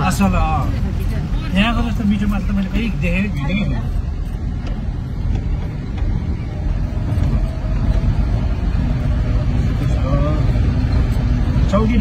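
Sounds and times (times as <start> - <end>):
vehicle engine and road rumble: 0.0 - 12.0.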